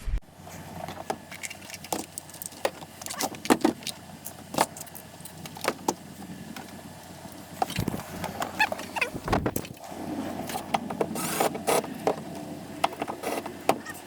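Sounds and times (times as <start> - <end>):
squeaky clicks: 7.6 - 9.2, 13.2 - 14.0.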